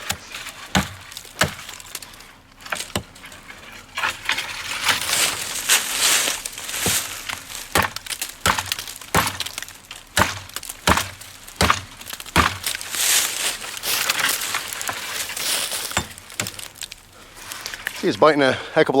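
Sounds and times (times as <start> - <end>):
hatchet chopping green wood: 0.0 - 3.2, 6.4 - 15.1, 15.7 - 17.0.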